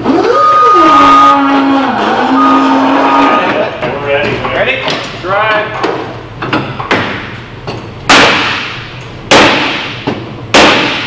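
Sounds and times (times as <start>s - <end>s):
heavy hammer blows on wood: 8.1s - 11.0s.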